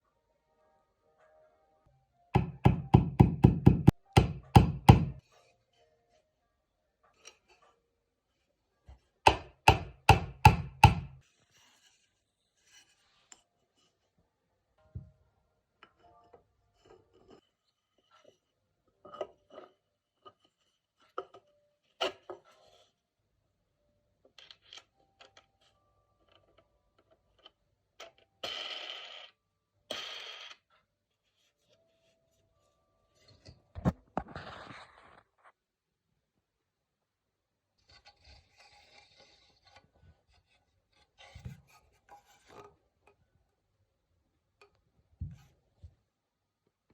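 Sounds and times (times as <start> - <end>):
clicks and taps: 2.4 - 5.2
hard objects knocking: 2.4 - 5.2, 9.3 - 11.2
scraping rubs: 37.8 - 42.7.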